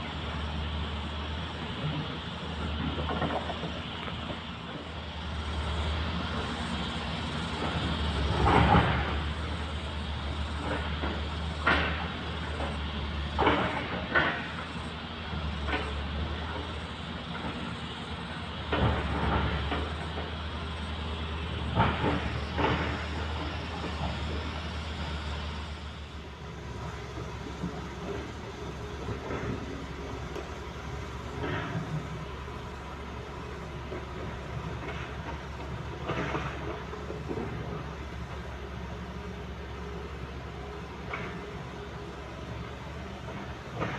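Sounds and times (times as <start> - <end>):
diesel engine running: 0.0 - 43.9
faint knocks and clatter: 2.8 - 4.5, 33.9 - 38.5
noisy engine bursts: 5.3 - 39.6.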